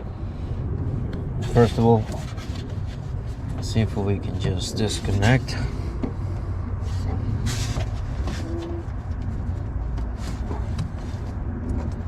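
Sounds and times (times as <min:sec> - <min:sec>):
steady low rumble: 0:00.0 - 0:12.0.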